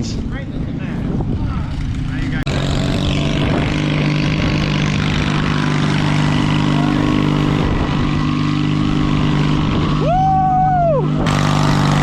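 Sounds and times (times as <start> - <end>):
riding lawn mower engine running: 0.0 - 12.0.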